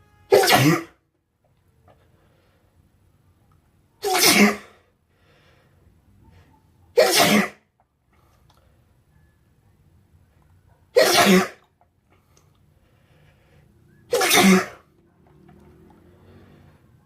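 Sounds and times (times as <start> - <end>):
person sneezing: 0.3 - 1.0, 4.0 - 4.8, 7.0 - 7.6, 11.0 - 11.7, 14.1 - 14.9.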